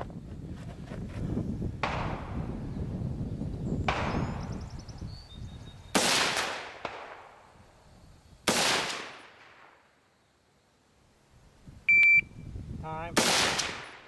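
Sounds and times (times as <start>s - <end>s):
rifle shots echoing: 6.0s - 7.4s, 8.5s - 9.8s, 13.2s - 14.0s.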